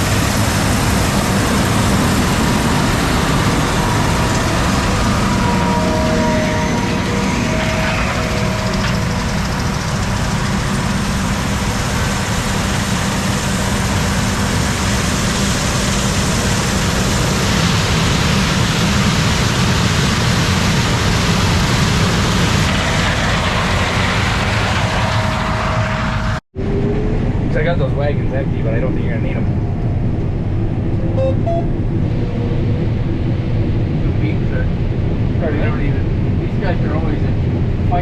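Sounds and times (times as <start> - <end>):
combine harvester running: 0.0 - 28.1.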